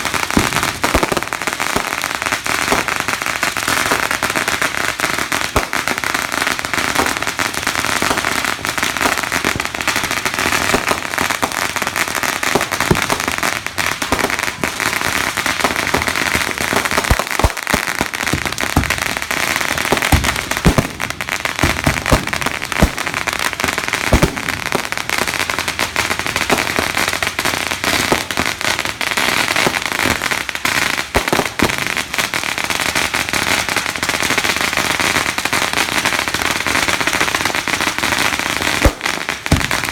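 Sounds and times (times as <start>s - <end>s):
fireworks crackling: 0.0s - 39.9s
deep firework bangs: 6.6s - 29.2s, 38.8s - 39.9s.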